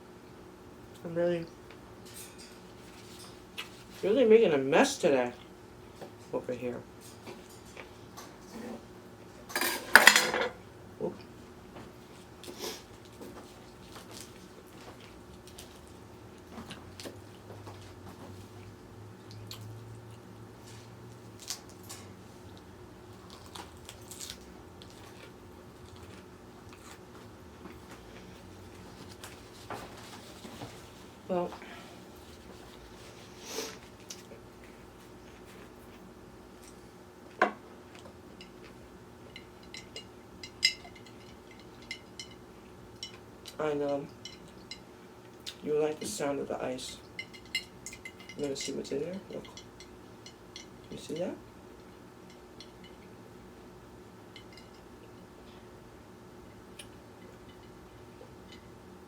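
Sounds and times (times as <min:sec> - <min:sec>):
person chewing salad: 0:12.1 - 0:17.9, 0:18.5 - 0:30.1, 0:32.0 - 0:45.6.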